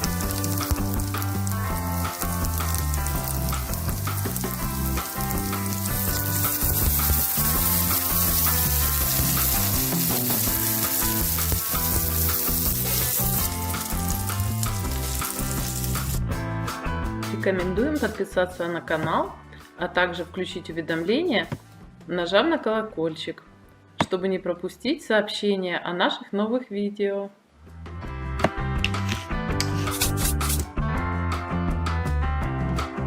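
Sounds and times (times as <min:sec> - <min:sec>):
food sizzling in a pan: 0:00.0 - 0:16.3
background music with bass line: 0:00.0 - 0:22.2, 0:27.6 - 0:33.0.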